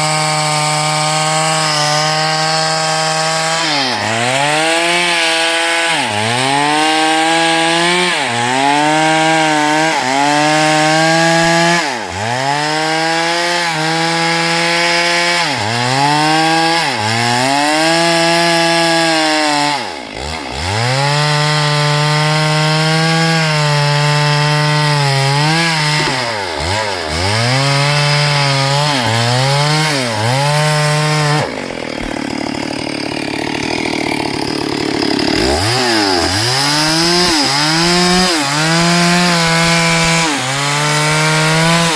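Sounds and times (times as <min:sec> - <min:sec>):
chainsaw cutting wood: 0:00.0 - 0:41.9.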